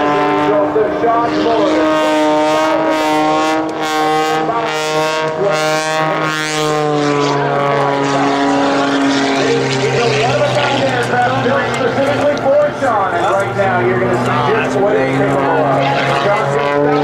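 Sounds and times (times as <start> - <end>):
biplane engine and propeller drone: 0.0 - 17.0.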